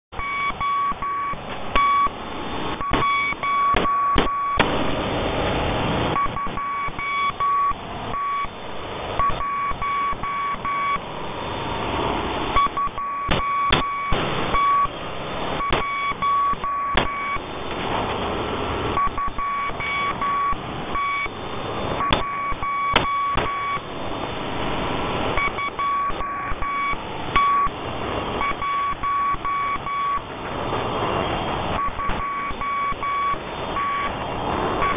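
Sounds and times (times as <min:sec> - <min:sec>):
morse code beeps: 0:00.1 - 0:04.6, 0:06.1 - 0:08.6, 0:09.2 - 0:11.1, 0:12.6 - 0:15.0, 0:15.6 - 0:17.5, 0:18.9 - 0:23.9, 0:25.3 - 0:27.8, 0:28.4 - 0:30.3, 0:31.7 - 0:34.2
radio static with crackles: 0:00.1 - 0:34.9.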